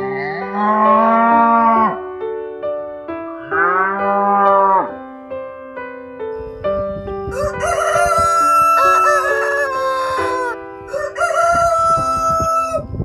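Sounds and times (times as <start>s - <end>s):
piano music: 0.0s - 13.0s
rooster crowing: 7.3s - 12.9s.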